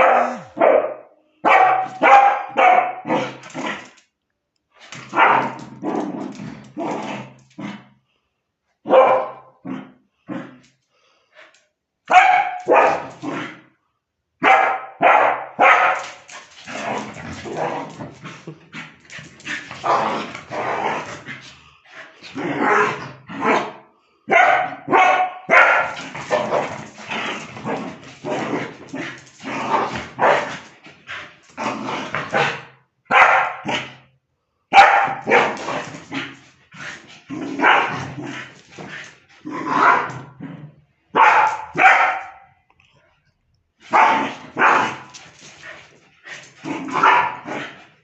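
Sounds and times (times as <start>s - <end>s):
dog barking: 0.0s - 3.4s, 5.1s - 5.6s, 8.8s - 9.6s, 12.1s - 13.2s, 14.4s - 16.3s, 23.4s - 26.6s, 30.2s - 30.5s, 32.3s - 34.0s, 34.7s - 35.6s, 37.6s - 38.0s, 39.7s - 40.2s, 41.1s - 42.6s, 43.9s - 45.1s, 46.9s - 47.6s.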